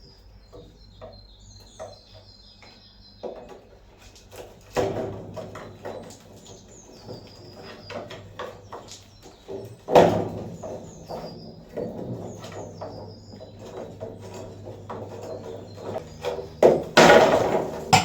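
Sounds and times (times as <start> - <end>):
metal clanks and knocks: 9.9 - 18.0
heavy metal bangs: 12.2 - 18.0.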